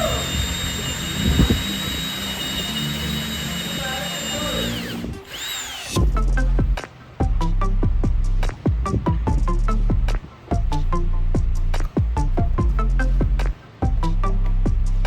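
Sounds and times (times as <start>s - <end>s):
electric drill motor whining: 0.0s - 6.0s
music with sharp beats: 0.0s - 15.0s.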